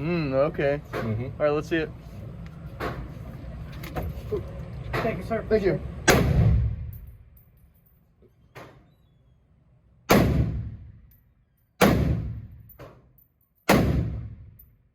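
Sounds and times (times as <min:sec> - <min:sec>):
rifle shots echoing: 0:06.1 - 0:07.0, 0:10.1 - 0:11.1, 0:11.8 - 0:12.7, 0:13.7 - 0:14.6.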